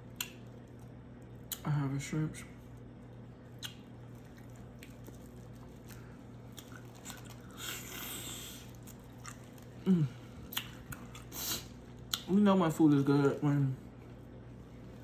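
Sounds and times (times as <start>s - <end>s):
lip-smacking: 0.1s - 1.7s, 3.4s - 12.4s
person chewing shrimp: 3.4s - 12.3s.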